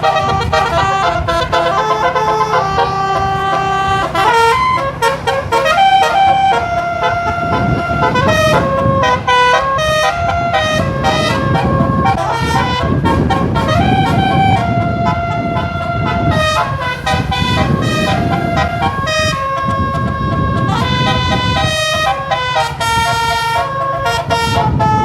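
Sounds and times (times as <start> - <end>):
bus engine and road noise: 0.0 - 25.0
multi-tone air horn melody: 0.0 - 25.0.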